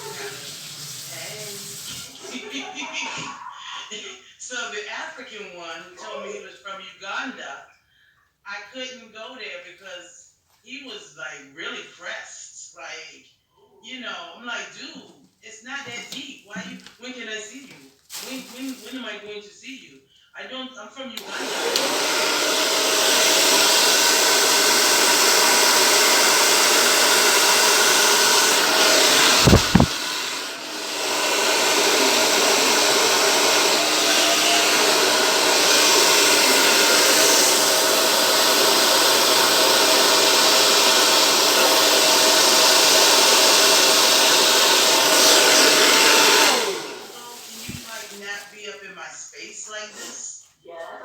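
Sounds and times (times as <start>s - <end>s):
hair dryer blowing: 0.0s - 3.2s, 21.2s - 48.0s
low thump: 29.4s - 30.0s.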